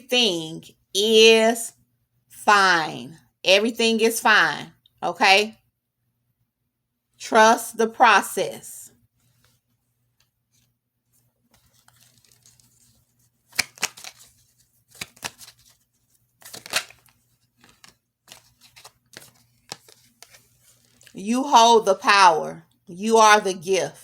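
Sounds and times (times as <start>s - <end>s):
faint electrical hum: 0.0s - 24.0s
cards snapping and rustling: 11.5s - 21.2s.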